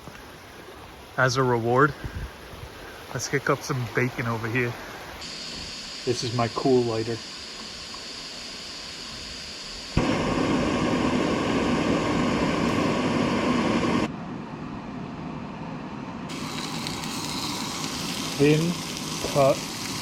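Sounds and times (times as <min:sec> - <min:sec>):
burning gas hissing: 0:02.8 - 0:14.1, 0:16.3 - 0:20.0.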